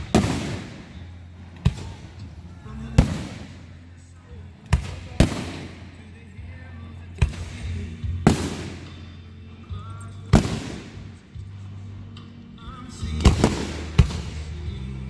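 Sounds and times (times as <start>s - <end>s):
firework shells bursting: 0.0s - 4.1s, 4.7s - 6.1s, 7.3s - 9.2s, 10.3s - 11.2s, 13.2s - 15.0s
music with steady bass: 0.0s - 15.0s.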